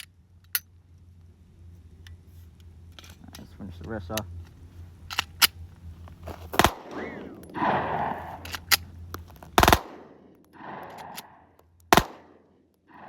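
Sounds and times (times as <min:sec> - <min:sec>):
airsoft pistol shots: 0:06.5 - 0:08.8, 0:09.6 - 0:13.0.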